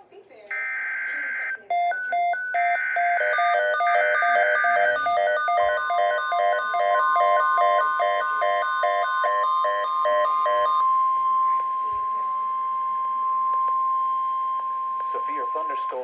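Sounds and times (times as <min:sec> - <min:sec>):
rapid pulsing alert beeps: 0:00.5 - 0:11.7
steady warning alarm tone: 0:00.5 - 0:16.0.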